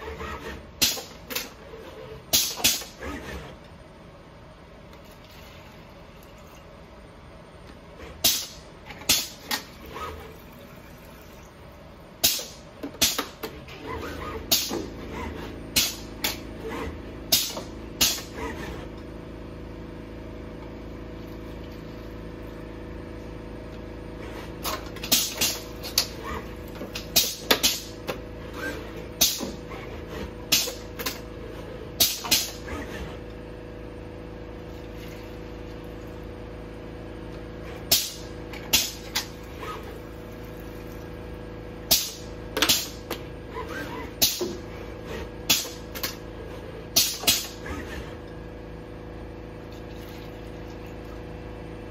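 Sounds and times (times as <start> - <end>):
robot arm motor hum: 23.3 - 30.4, 38.5 - 45.5.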